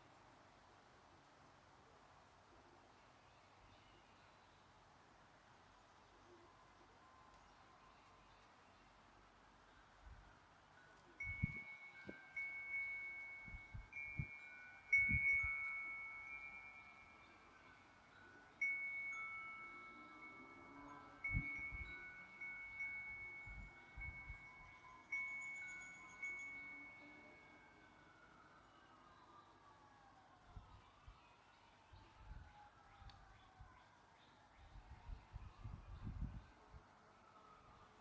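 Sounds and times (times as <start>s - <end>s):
wind chime ringing: 10.7s - 28.8s.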